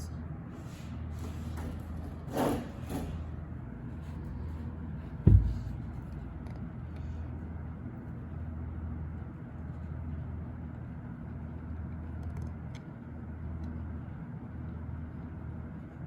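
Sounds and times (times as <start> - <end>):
steady low rumble: 3.4 - 15.9
light clicks of small parts: 12.1 - 13.0.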